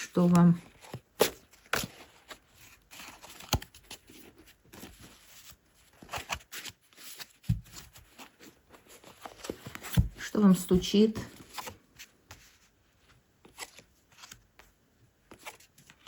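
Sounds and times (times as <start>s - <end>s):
cards shuffled and tapped on table: 6.0s - 8.2s, 9.2s - 12.5s.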